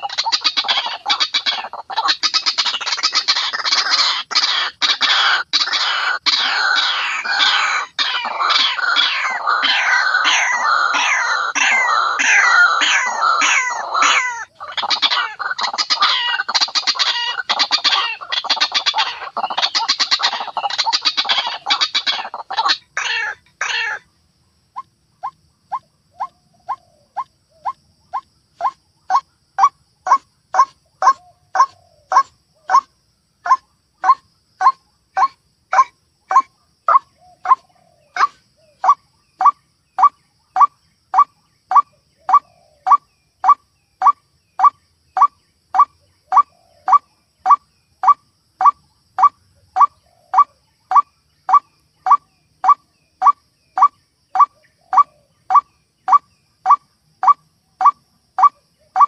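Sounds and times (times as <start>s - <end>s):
waterhen calling: 0.0s - 24.0s.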